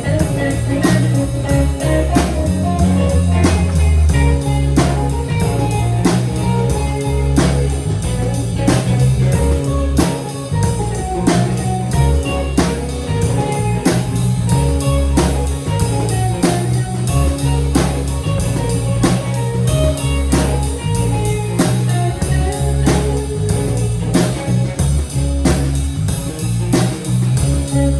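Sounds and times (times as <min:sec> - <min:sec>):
bass notes: 0:00.0 - 0:27.9
drum kit beat: 0:00.0 - 0:27.9
guitar: 0:00.0 - 0:27.9.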